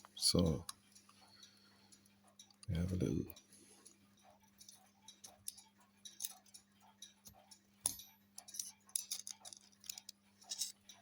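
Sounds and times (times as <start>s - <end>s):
small metal parts clicking: 4.2s - 11.0s.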